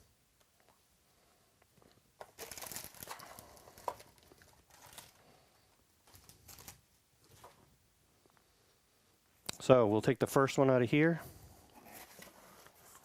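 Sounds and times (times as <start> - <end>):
crinkly packaging rustling: 1.8 - 7.6.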